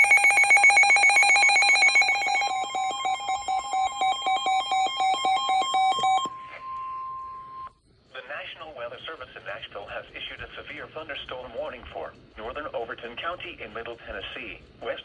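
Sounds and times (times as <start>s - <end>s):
rapid electronic beeping: 0.0s - 6.3s
steady warning tone: 0.0s - 7.8s.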